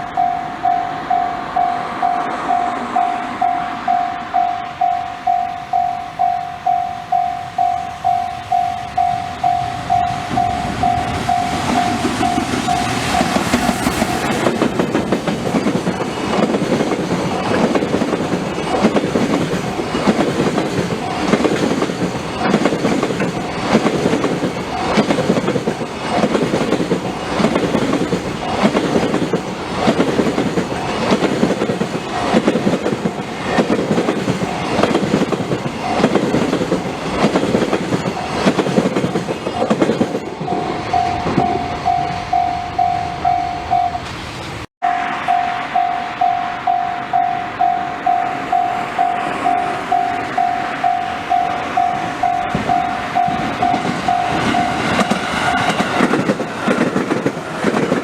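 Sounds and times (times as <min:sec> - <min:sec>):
level crossing bell ringing: 0:00.0 - 0:13.4, 0:39.6 - 0:44.1, 0:44.8 - 0:55.0
train wheels clacking on rails: 0:00.0 - 0:58.0.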